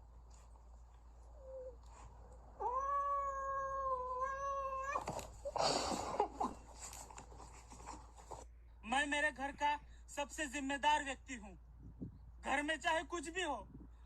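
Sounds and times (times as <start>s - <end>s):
cat yowling: 2.6s - 5.2s
harsh scuffling: 4.9s - 8.5s.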